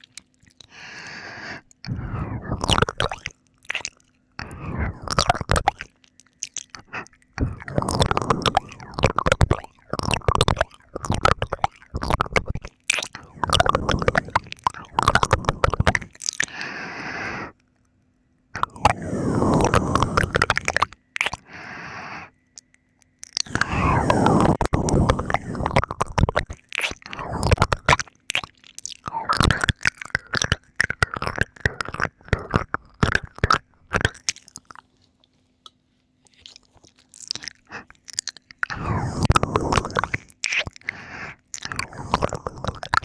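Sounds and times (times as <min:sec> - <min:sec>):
wet licking mouth sounds: 0:00.0 - 0:17.6, 0:18.6 - 0:21.7, 0:22.6 - 0:34.9, 0:35.6 - 0:43.0
heavy breaths: 0:00.7 - 0:02.7, 0:04.4 - 0:05.1, 0:06.7 - 0:09.0, 0:13.2 - 0:17.6, 0:21.4 - 0:22.4, 0:38.7 - 0:42.8.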